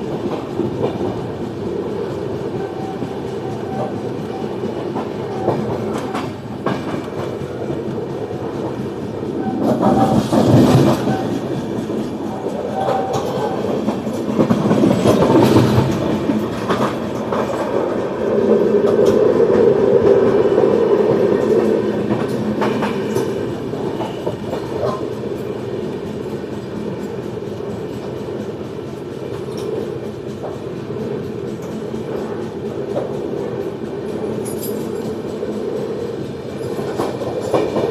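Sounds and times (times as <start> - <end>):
train wheels rumbling on rails: 0.0 - 37.9.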